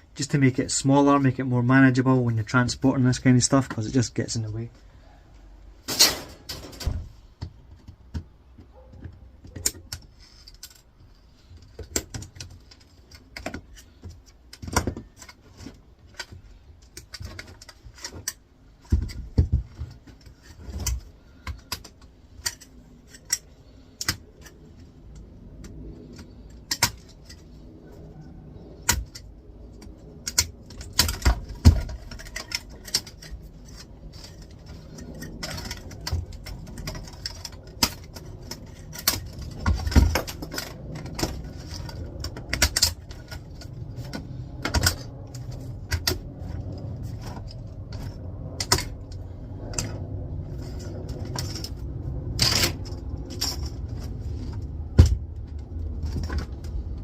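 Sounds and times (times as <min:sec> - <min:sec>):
small parts clicking and rattling: 0:05.8 - 0:57.0.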